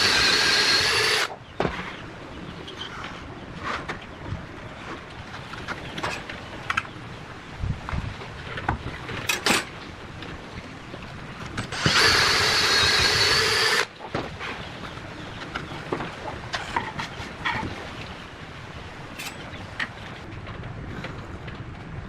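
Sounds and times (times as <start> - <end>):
power tool motor whine: 0.0 - 1.3, 11.7 - 13.9.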